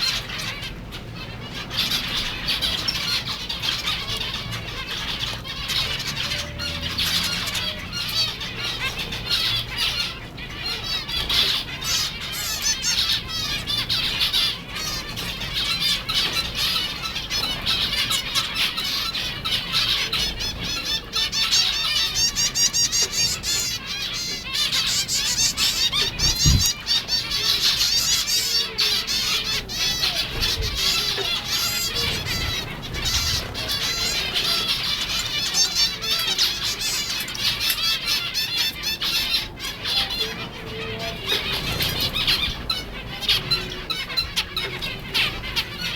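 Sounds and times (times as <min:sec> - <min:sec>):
finches chirping: 0:00.0 - 0:45.9
wings fluttering: 0:23.0 - 0:35.4.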